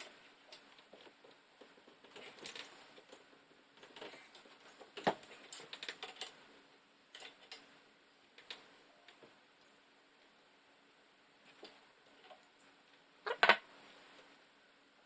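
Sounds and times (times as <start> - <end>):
tools and metal parts clicking: 3.8 - 6.4, 7.1 - 7.6.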